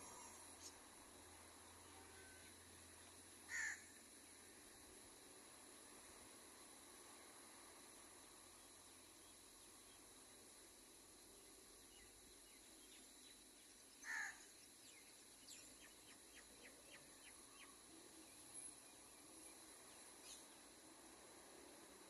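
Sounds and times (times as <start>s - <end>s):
steady high hiss: 0.0s - 22.0s.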